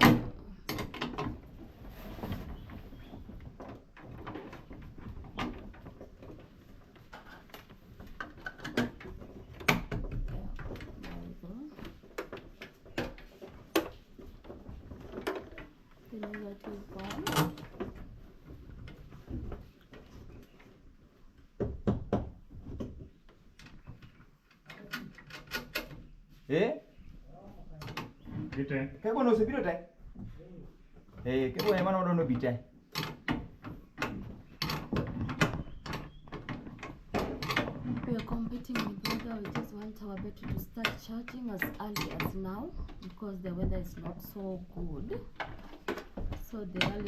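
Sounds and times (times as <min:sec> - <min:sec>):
tools clicking and rattling: 0:35.9 - 0:44.1.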